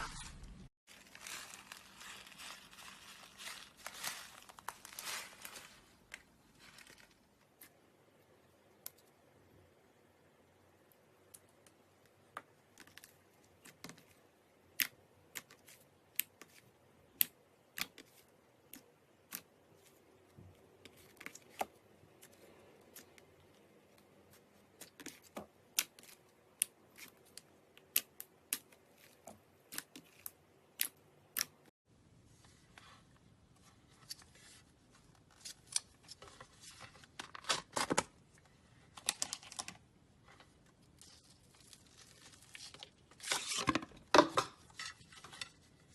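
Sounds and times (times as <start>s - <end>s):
slime crackling and crinkling: 0.0s - 7.8s, 38.9s - 43.7s.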